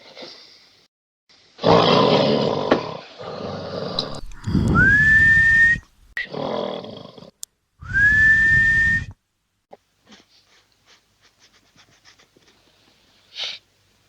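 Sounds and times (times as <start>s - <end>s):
whistling snore: 4.2s - 6.4s, 7.8s - 9.1s.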